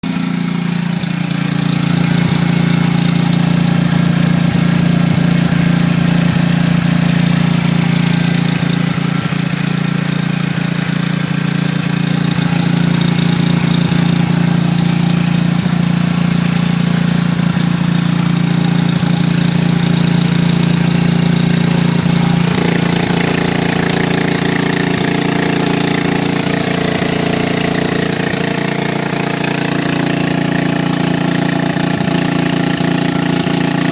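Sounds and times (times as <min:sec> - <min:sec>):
generator engine running: 0:00.0 - 0:33.9.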